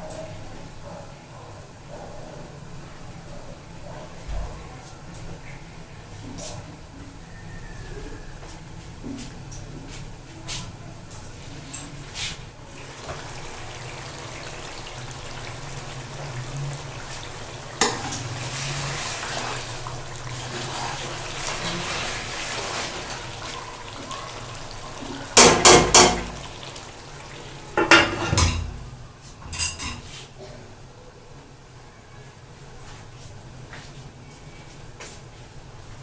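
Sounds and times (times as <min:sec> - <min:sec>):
faint hiss of food cooking: 0:09.5 - 0:36.0
utensil knocking against pot: 0:25.4 - 0:26.4.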